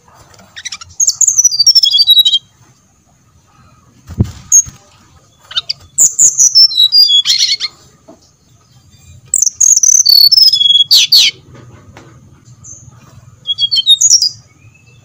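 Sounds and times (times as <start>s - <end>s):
bird whistling song: 0.6s - 2.5s, 5.4s - 7.7s, 9.0s - 11.4s, 13.4s - 15.0s.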